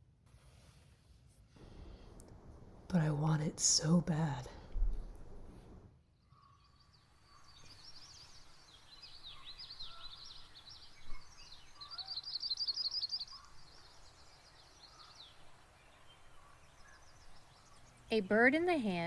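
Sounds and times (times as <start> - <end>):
low background hiss: 1.6 - 5.9, 7.2 - 19.0
songbirds chirping and singing: 6.6 - 19.0.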